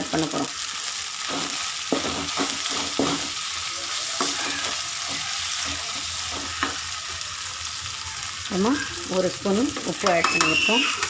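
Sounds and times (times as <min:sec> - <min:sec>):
onions sizzling in hot oil: 0:00.0 - 0:11.0
spoon scraping a pan: 0:01.2 - 0:06.9.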